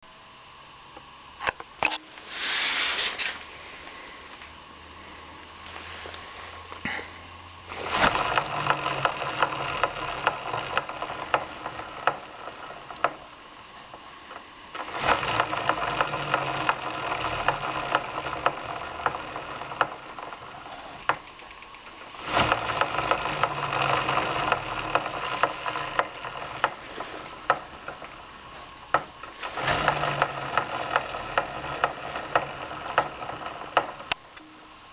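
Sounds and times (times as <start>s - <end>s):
motorcycle engine and chain: 7.7s - 34.3s
sprocket knocking: 7.7s - 34.3s.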